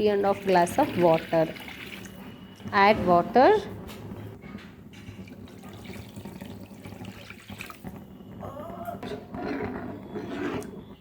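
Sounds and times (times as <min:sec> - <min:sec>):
water pouring into a pan: 0:00.2 - 0:02.3, 0:05.2 - 0:08.0.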